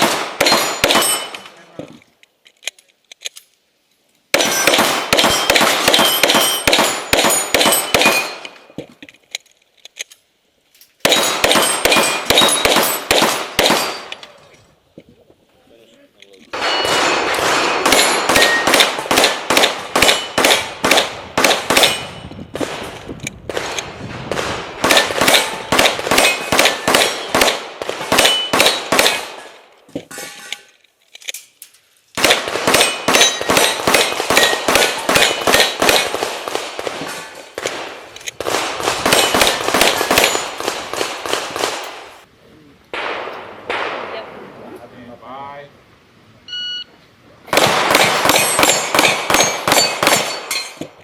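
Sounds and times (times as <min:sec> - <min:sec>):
rapid pistol fire: 0:00.0 - 0:01.2, 0:04.3 - 0:08.2, 0:11.0 - 0:14.0, 0:16.6 - 0:29.4, 0:32.2 - 0:42.1, 0:47.5 - 0:50.4
steel targets ringing: 0:00.4 - 0:01.6, 0:04.4 - 0:08.6, 0:11.1 - 0:13.1, 0:16.6 - 0:19.1, 0:28.2 - 0:28.8, 0:29.4 - 0:30.7, 0:48.2 - 0:50.8.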